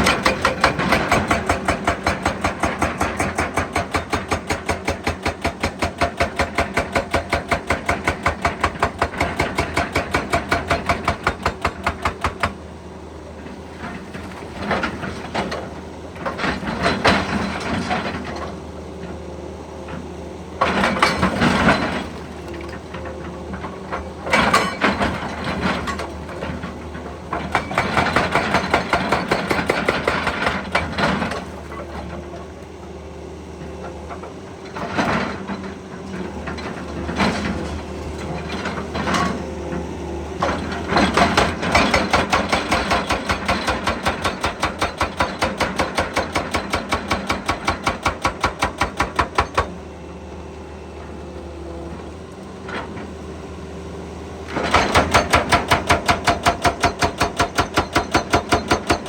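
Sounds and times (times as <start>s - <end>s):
hydraulic breaker hammer pounding: 0.0s - 12.6s, 14.6s - 18.6s, 20.6s - 32.3s, 40.4s - 49.8s, 54.5s - 59.0s
excavator engine grinding: 0.0s - 59.0s.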